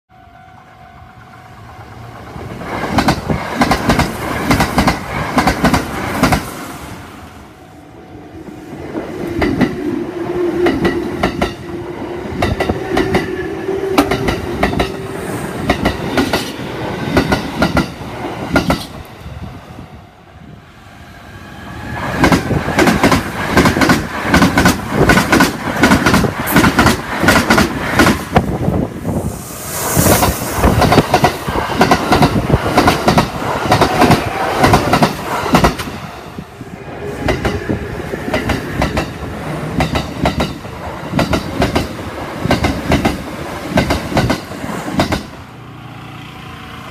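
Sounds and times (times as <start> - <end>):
train wheels clattering over rail joints: 2.3 - 6.5, 22.1 - 28.5, 30.2 - 36.0.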